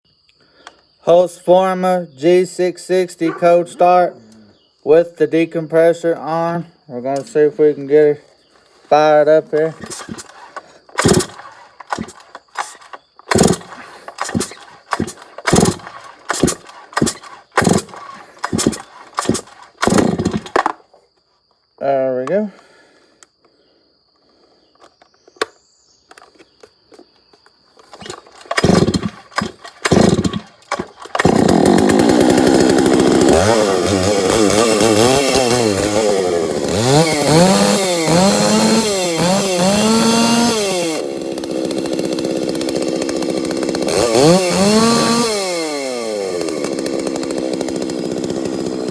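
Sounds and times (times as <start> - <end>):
chainsaw starting and revving: 9.3 - 20.7, 27.9 - 48.9
chainsaw decompressor clicks: 9.5 - 20.8, 24.8 - 48.9.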